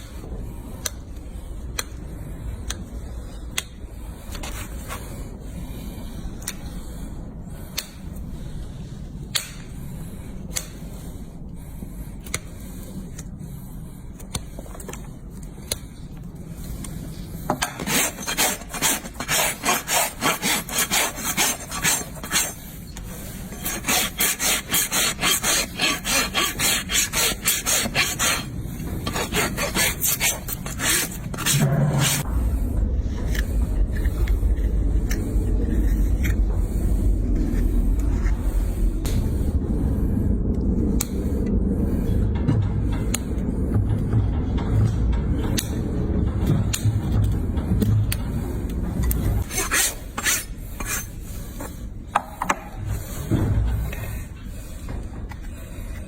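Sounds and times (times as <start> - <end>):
low steady hum: 0.0 - 56.0
rasp filing a hoof: 17.5 - 32.3, 49.4 - 54.0.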